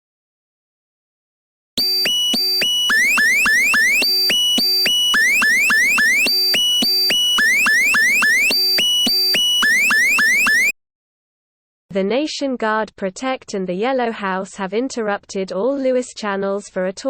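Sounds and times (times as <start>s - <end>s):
emergency alert beeps and chirps: 1.8s - 10.8s.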